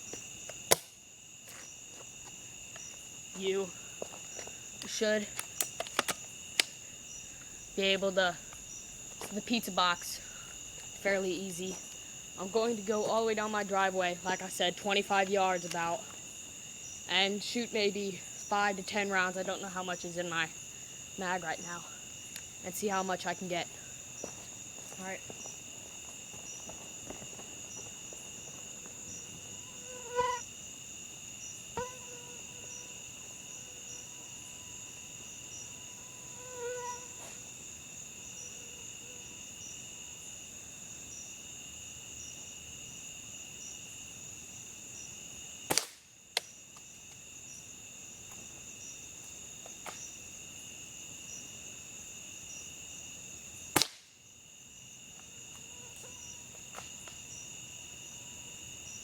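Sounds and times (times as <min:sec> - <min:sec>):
crickets chirring: 0:00.0 - 0:59.0
airsoft rifle shots cracking: 0:45.7 - 0:46.1, 0:53.8 - 0:54.1.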